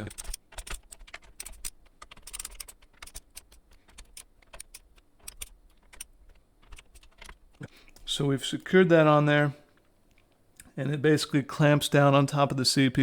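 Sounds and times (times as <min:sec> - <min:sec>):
tool clicking against metal bracket: 0:00.0 - 0:07.4
screws being tightened clicking: 0:00.0 - 0:08.1.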